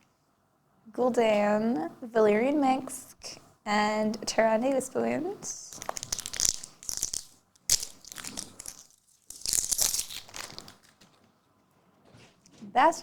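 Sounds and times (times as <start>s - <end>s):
card pack wrapper tearing and crinkling: 5.7s - 11.1s.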